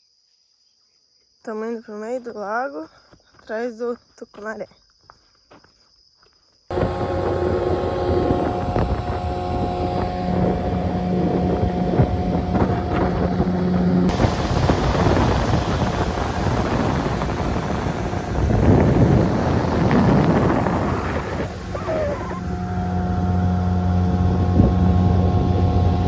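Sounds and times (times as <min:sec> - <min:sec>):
boat motor running: 0:06.7 - 0:26.0
water rushing: 0:06.7 - 0:26.0
wind buffeting microphone: 0:06.7 - 0:26.0.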